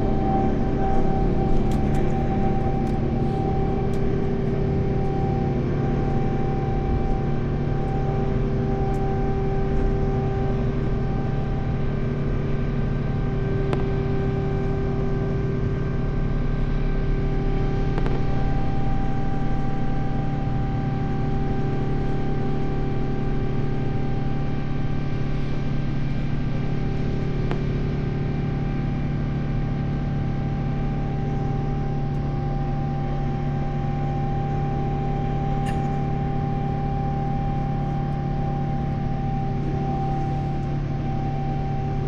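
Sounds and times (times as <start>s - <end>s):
jet cabin engine drone: 0.0s - 42.0s
steady hum tones: 0.0s - 42.0s.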